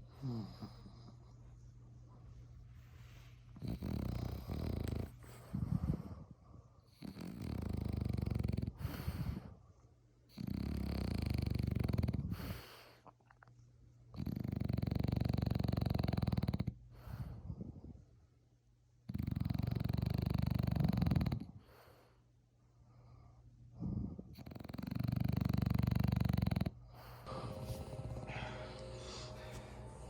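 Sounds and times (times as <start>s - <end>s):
rattling snores: 3.6s - 5.2s, 7.0s - 9.3s, 10.3s - 12.5s, 14.2s - 16.8s, 19.1s - 21.6s, 24.0s - 26.8s.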